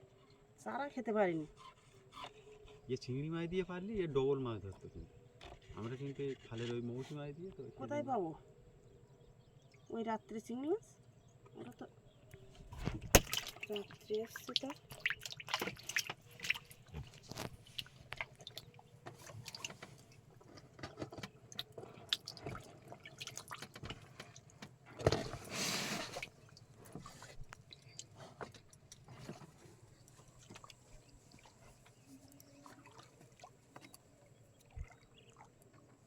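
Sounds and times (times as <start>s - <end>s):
water drips and splashes: 12.3s - 36.0s
burst of splashing: 13.0s - 18.6s.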